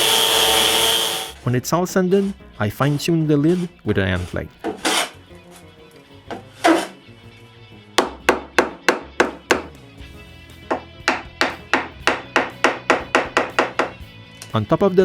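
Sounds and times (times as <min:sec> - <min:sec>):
hand plane strokes on wood: 0:00.0 - 0:05.7, 0:06.3 - 0:07.0
background music: 0:00.0 - 0:15.0.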